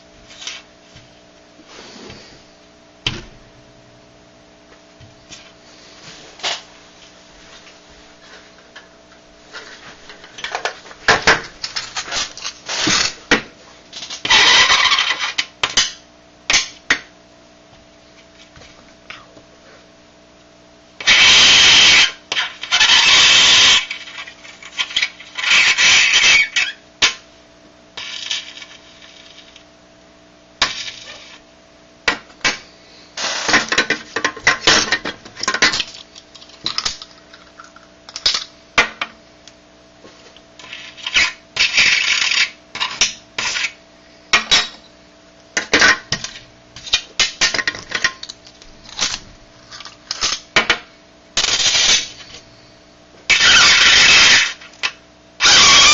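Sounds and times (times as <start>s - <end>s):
coins buzzing on dry ice: 14.0s - 15.5s, 21.0s - 26.8s, 28.0s - 29.7s, 30.6s - 31.4s, 40.6s - 43.8s, 51.4s - 52.4s, 53.3s - 55.9s.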